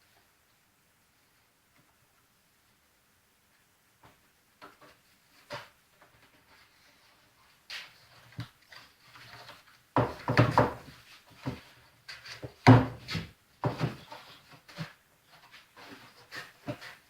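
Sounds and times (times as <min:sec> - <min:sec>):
wooden blocks knocking and rubbing: 0:07.8 - 0:17.0.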